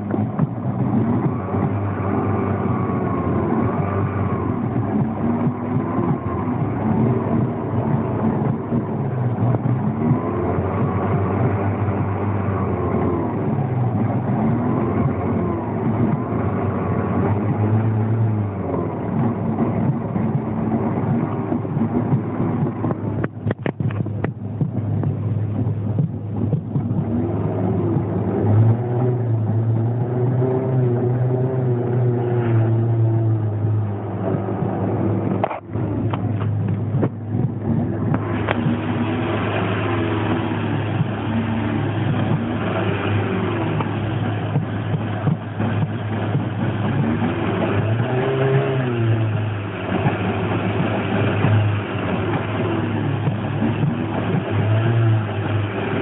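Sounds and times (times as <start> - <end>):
car engine running unevenly: 0.0 - 56.0.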